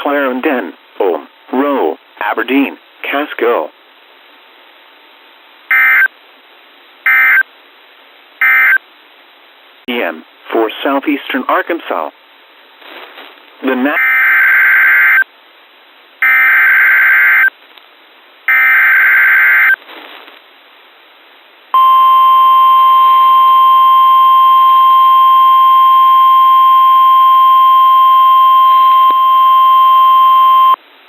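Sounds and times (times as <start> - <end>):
digital header tones: 21.8 - 30.8
steady warning alarm tone: 21.8 - 30.8.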